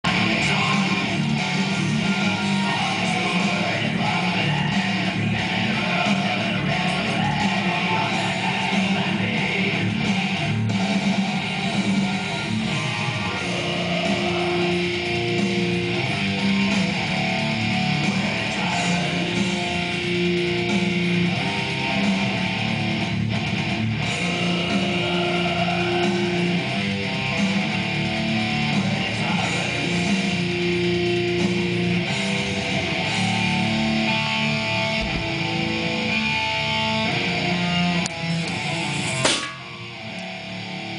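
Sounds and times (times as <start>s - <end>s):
guitar-led rock music: 0.0s - 40.9s.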